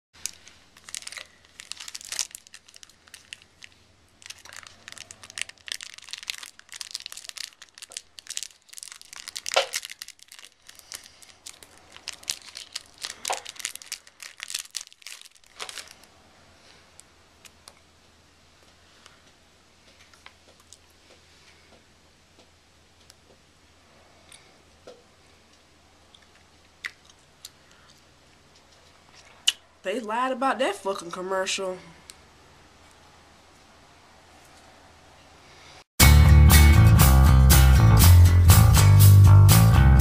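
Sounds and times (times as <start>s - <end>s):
candy wrapper crinkling and tearing: 0.2s - 16.2s.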